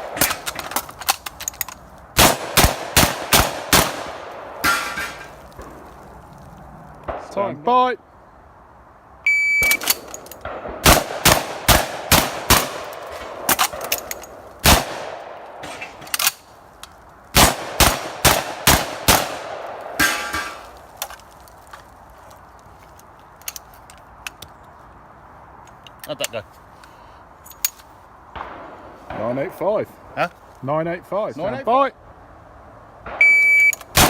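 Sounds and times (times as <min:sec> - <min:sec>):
shotgun firing: 0:02.2 - 0:05.8, 0:09.6 - 0:13.8, 0:14.6 - 0:15.8, 0:17.4 - 0:20.7.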